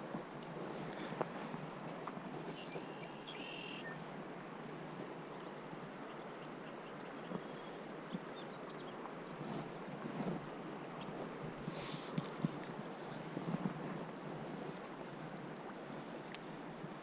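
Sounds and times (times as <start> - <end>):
steady outdoor hiss: 0.0 - 17.0
small birds calling: 2.5 - 4.0, 4.8 - 10.0, 11.0 - 12.2.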